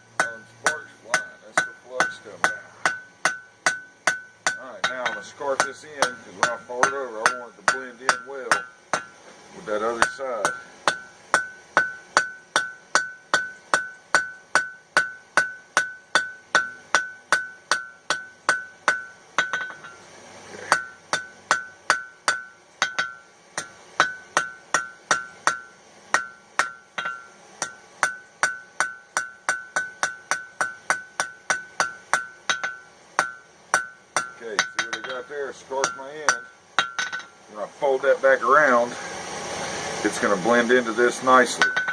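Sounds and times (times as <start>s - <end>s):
hammer striking steel on anvil: 0.0s - 9.2s, 9.8s - 20.0s, 20.6s - 37.4s, 41.2s - 41.9s.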